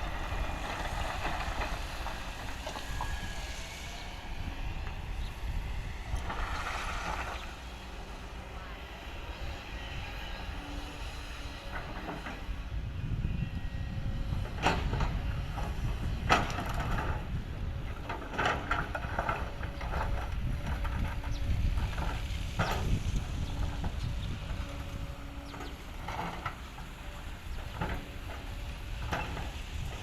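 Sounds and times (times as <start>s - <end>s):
excavator engine rumbling: 0.0s - 30.0s.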